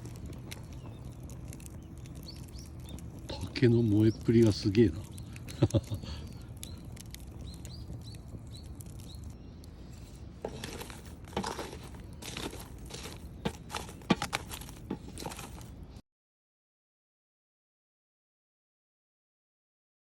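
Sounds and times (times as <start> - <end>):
bamboo crackling in campfire: 0.0 - 16.0
bird chirps: 0.5 - 10.9.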